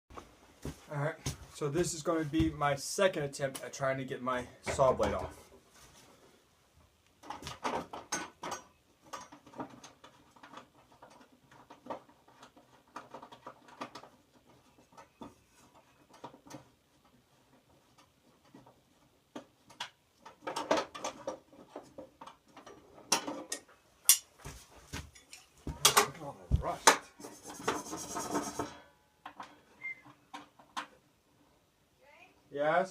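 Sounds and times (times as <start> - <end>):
hand tools and metal parts rattling: 7.2 - 31.1.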